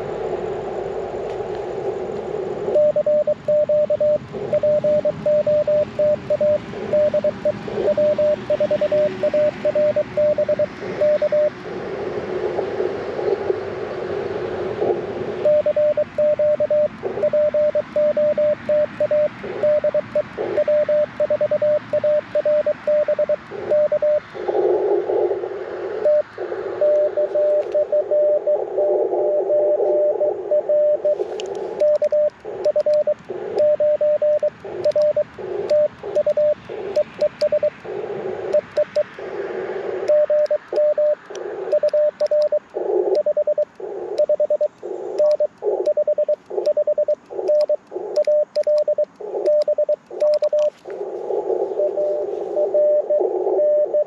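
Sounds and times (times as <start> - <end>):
receiver hiss: 0.0 - 54.0
morse code tone: 2.8 - 11.7, 14.8 - 25.3, 26.0 - 37.8, 38.4 - 39.1, 40.0 - 54.0.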